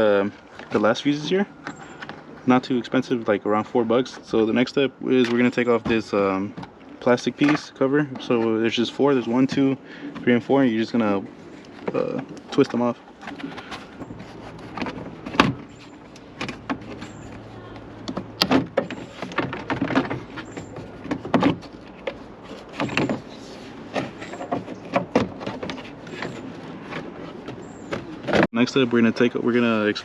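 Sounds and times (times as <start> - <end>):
plastic fasteners clicking and scraping: 11.6 - 28.5.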